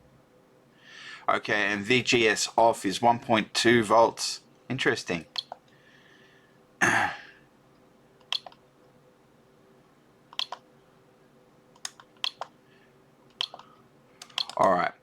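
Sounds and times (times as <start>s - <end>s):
faint steady hum: 0.0s - 15.0s
sharp light clicks: 8.2s - 8.6s, 13.3s - 14.8s.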